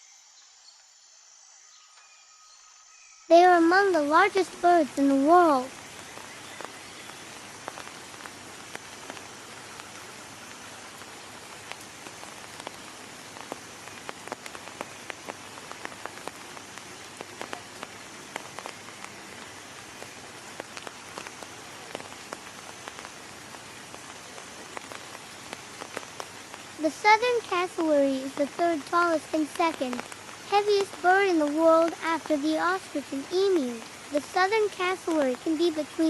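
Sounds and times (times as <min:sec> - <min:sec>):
raindrops ticking: 0:03.3 - 0:36.0
steady rain falling: 0:03.3 - 0:36.0.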